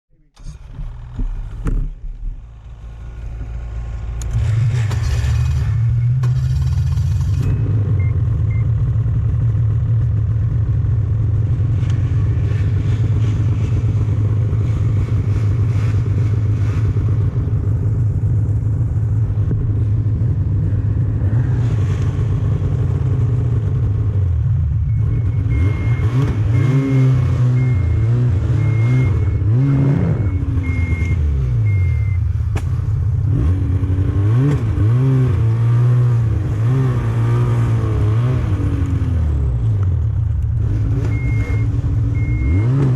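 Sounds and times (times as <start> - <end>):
short high beep: 7.4 - 8.6, 24.9 - 32.2, 41.1 - 42.8
snowmobile engine revving: 25.0 - 32.1, 33.2 - 39.7, 40.6 - 42.9.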